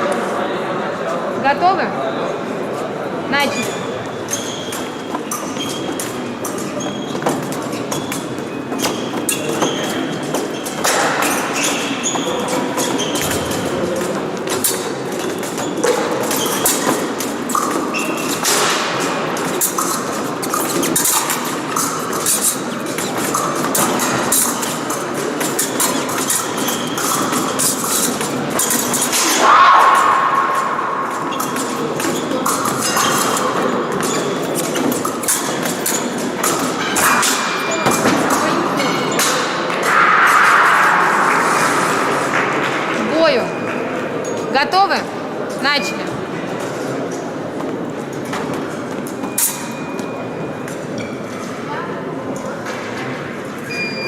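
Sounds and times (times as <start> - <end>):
din of large hall: 0.0 - 54.0
short high squeaks: 3.4 - 7.2
fencing footwork and blade clicks: 3.6 - 40.0, 48.2 - 51.2.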